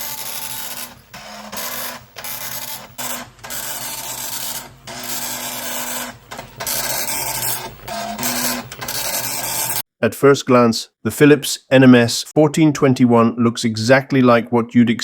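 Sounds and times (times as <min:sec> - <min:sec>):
dot matrix printer chattering: 0:00.0 - 0:09.8.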